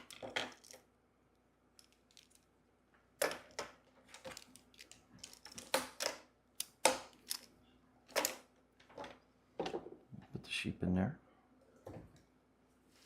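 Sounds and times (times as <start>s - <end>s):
plastic tiles clacking together: 0.0s - 0.8s, 1.8s - 2.5s, 3.2s - 7.5s.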